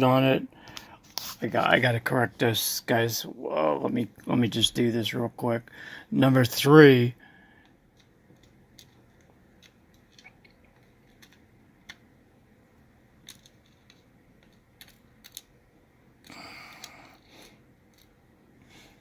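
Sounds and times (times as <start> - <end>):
small metal parts clicking: 7.9 - 12.0, 13.2 - 15.6, 16.2 - 18.2.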